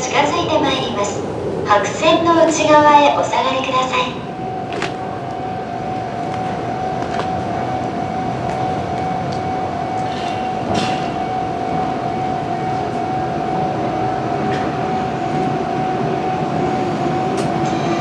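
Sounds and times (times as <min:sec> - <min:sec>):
steady high-pitched tone: 0:00.0 - 0:18.0
train wheels rumbling on rail: 0:00.0 - 0:18.0
sharp clacks of wheels: 0:06.2 - 0:18.0.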